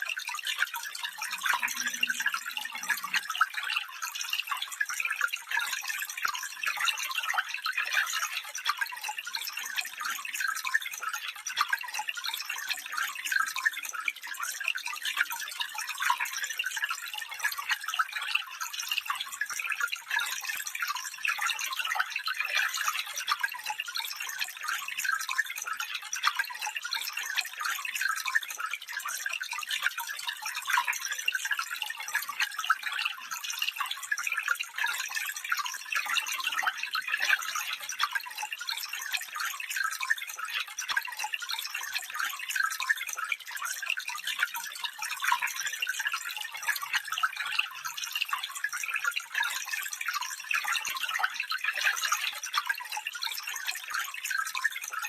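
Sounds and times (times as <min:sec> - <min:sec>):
stream babbling over stones: 0:01.3 - 0:03.3.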